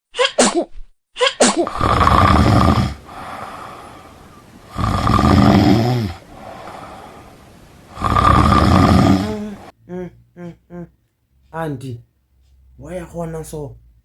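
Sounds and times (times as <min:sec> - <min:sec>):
quiet breathing: 0:01.7 - 0:09.7
woman snoring loudly: 0:01.7 - 0:09.7.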